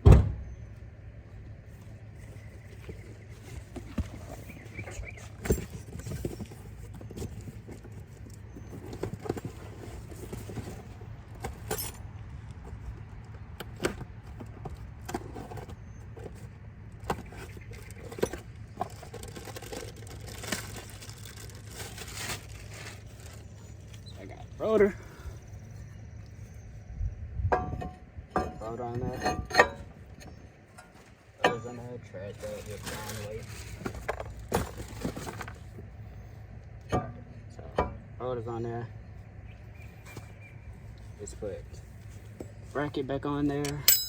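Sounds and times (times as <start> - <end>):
metal tools clinking: 11.5 - 12.1, 27.6 - 29.9, 43.6 - 44.0.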